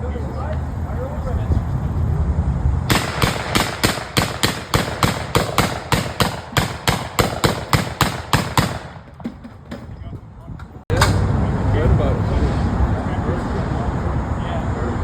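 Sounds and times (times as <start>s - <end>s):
gatling gun firing: 2.9s - 9.2s.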